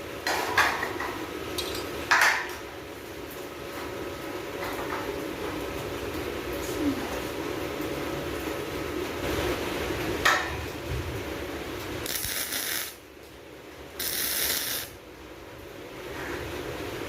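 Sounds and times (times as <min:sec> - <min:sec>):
arc welding crackling hiss: 0:11.7 - 0:13.1, 0:13.9 - 0:15.0.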